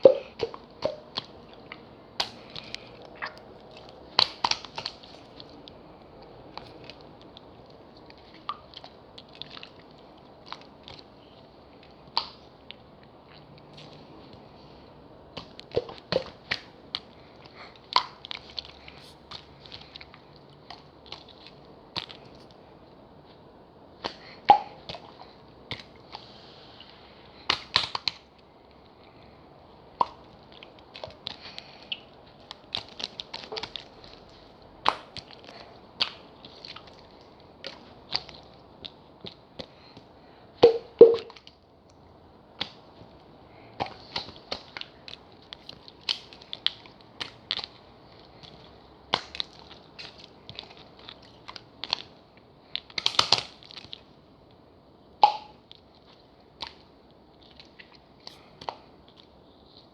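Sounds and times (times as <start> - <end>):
slime being kneaded clicking and popping: 0.0 - 5.8, 27.5 - 28.2, 30.0 - 39.4, 43.8 - 52.1, 52.8 - 54.0.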